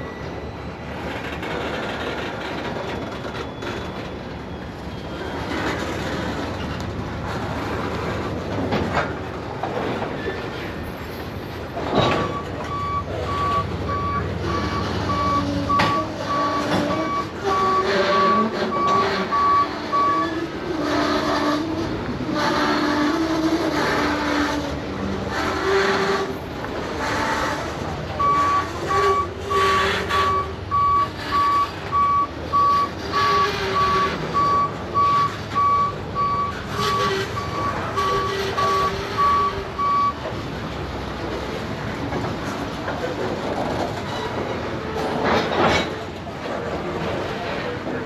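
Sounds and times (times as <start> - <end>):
vehicle backup alarm beeping: 12.0 - 20.3, 28.1 - 40.3.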